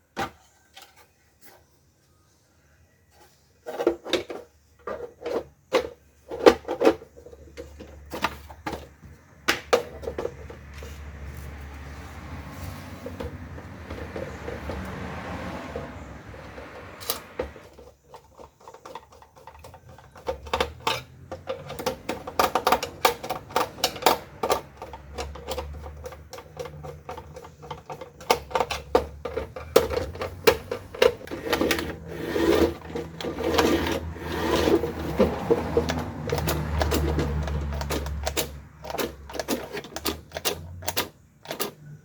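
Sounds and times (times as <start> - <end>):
plastic toy parts clicking: 18.0 - 42.0.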